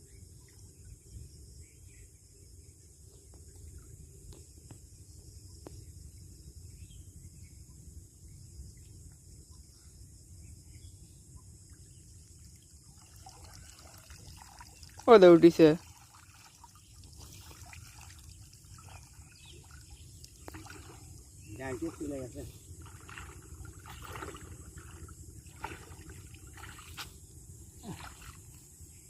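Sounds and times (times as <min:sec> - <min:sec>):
insects hissing: 0:13.4 - 0:29.0.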